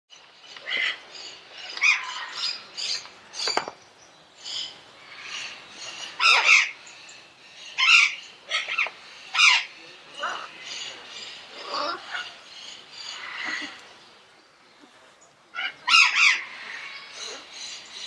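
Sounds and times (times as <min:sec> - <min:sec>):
parrot squawking and chirping: 0:00.6 - 0:03.6, 0:04.4 - 0:06.8, 0:07.6 - 0:13.8, 0:15.6 - 0:17.8.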